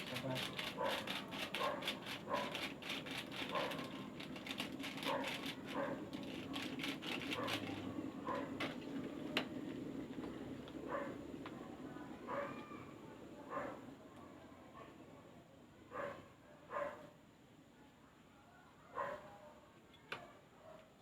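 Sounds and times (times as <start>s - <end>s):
fast clicking: 0.0s - 7.8s
dog barking: 0.6s - 2.7s, 3.5s - 4.0s, 5.0s - 6.0s, 7.3s - 8.6s, 10.9s - 11.2s, 12.3s - 12.6s, 13.5s - 13.8s, 15.9s - 17.2s, 18.8s - 20.9s.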